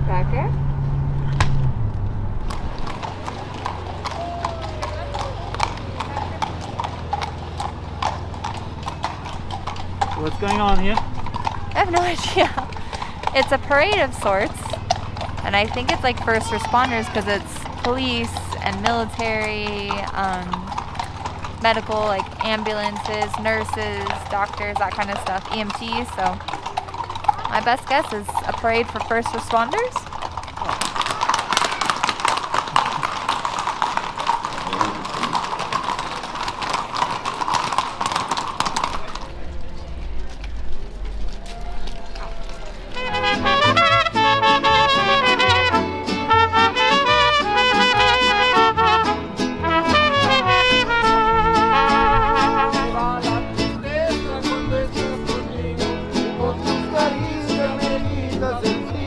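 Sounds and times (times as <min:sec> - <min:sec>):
horse hooves clip-clopping on street: 0:00.0 - 0:59.0
plucked string music over beat: 0:13.4 - 0:14.7, 0:43.0 - 0:59.0.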